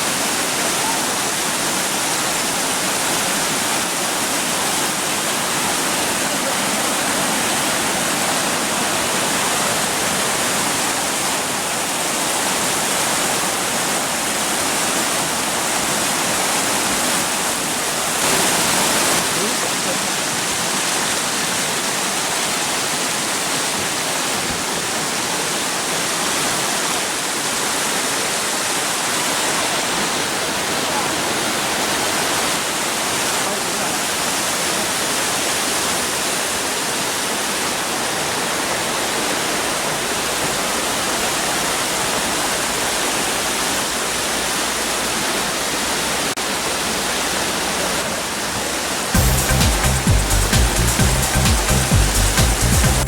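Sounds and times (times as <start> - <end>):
waterfall roaring: 0.0 - 53.0
music: 49.2 - 53.0.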